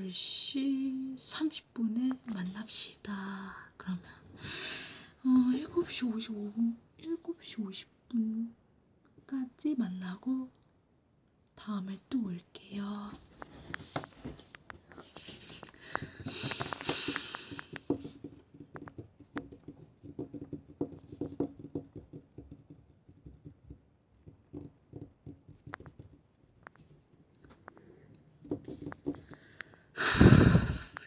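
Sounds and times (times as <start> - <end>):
breathy hiss: 15.0 - 17.7.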